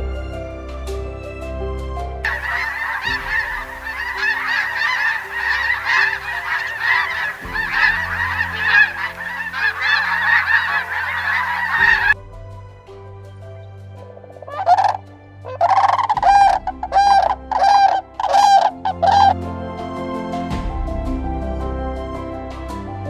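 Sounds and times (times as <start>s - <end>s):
soft background music: 0.0s - 23.0s
flock of birds honking: 2.3s - 12.2s.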